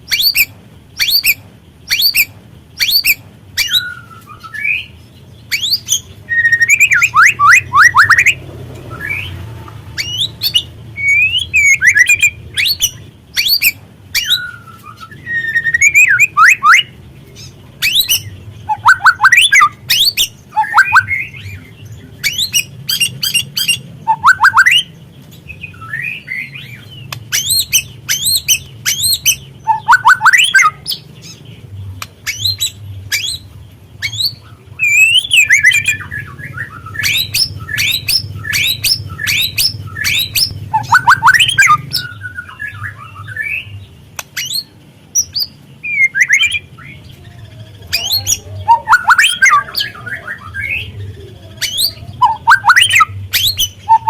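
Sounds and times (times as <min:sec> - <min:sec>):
falling whistled bird notes: 0:22.2 - 0:24.9, 0:34.0 - 0:43.7.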